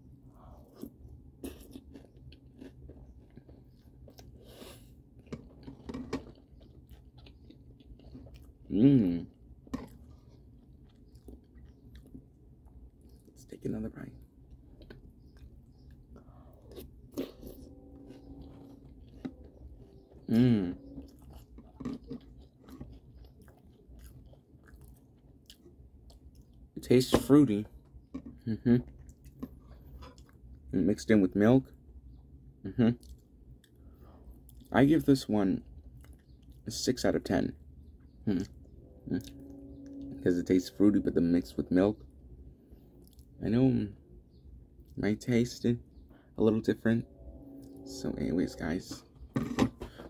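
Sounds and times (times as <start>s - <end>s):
person chewing crunchy cereal: 0.4s - 13.4s, 14.4s - 26.6s
short wavering vocal sound: 20.2s - 21.0s, 38.3s - 41.5s.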